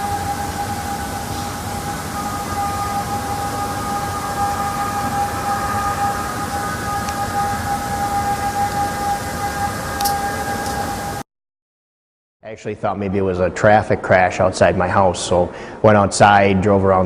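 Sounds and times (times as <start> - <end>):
drone in the sky: 0.0 - 11.2
noisy rumble: 0.0 - 11.2.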